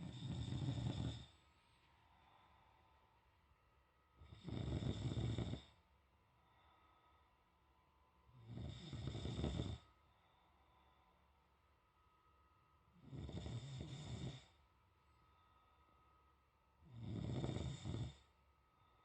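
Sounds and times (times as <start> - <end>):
man snoring loudly: 0.0 - 1.3, 4.2 - 5.8, 8.3 - 9.9, 13.0 - 14.6, 16.9 - 18.3.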